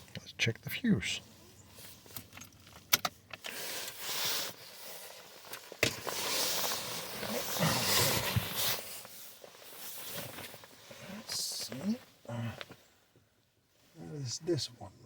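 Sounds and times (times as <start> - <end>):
scraping and rustling: 3.5 - 12.0.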